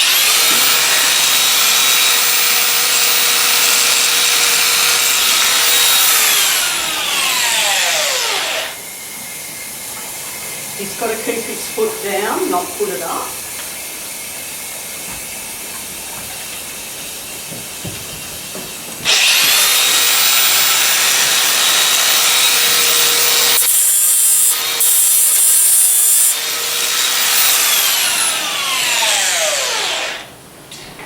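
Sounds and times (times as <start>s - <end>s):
grinder rasping against hoof: 0.0s - 8.8s, 19.0s - 30.3s
electric grinder whining: 0.0s - 8.9s, 19.0s - 30.4s.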